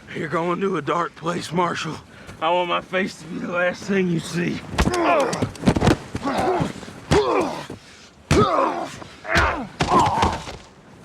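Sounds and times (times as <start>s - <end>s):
heavy punches landing: 4.8s - 7.6s, 8.3s - 8.7s, 9.3s - 10.7s.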